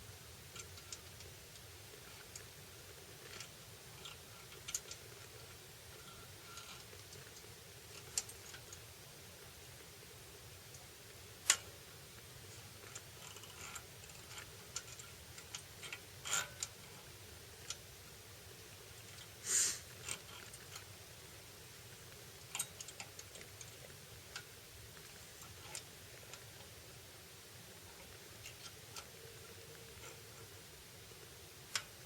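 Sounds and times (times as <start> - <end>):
light clicks and taps: 31.7 - 32.0.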